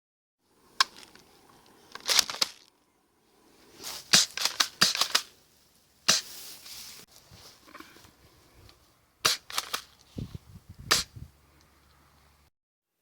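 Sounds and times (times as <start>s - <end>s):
toy shotgun clacks: 4.1s - 5.3s, 9.3s - 10.0s.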